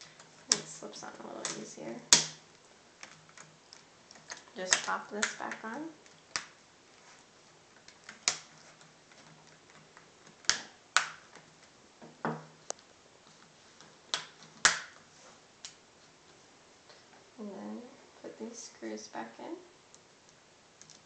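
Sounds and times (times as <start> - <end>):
plastic clips snapping: 1.4 - 2.4, 3.0 - 6.6, 7.8 - 8.5, 9.1 - 11.7, 13.8 - 15.0.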